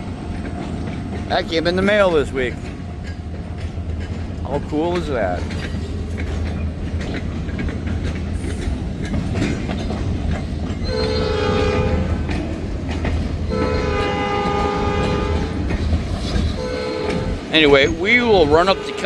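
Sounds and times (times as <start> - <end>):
diesel locomotive engine rumble: 0.0 - 19.0
multi-note air horn: 13.5 - 15.6.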